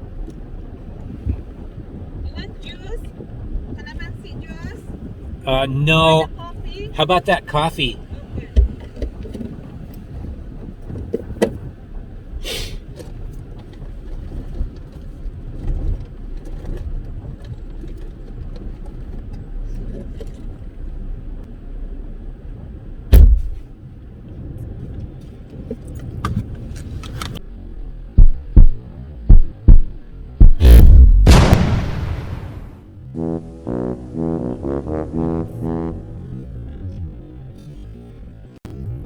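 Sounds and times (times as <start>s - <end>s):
steady low rumble: 0.0s - 17.4s, 20.4s - 25.2s, 27.3s - 39.0s
loud thump: 23.1s - 23.6s, 28.2s - 32.8s.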